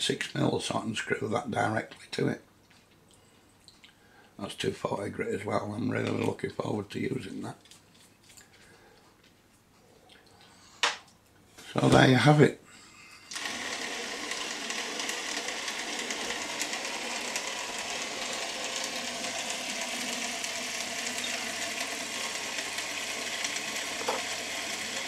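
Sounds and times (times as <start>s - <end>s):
sanding machine running: 13.3s - 25.0s.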